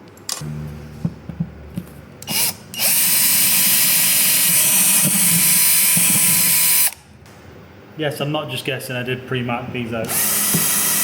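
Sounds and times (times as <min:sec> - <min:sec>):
electric drill whining: 0:02.2 - 0:07.0, 0:10.1 - 0:11.0.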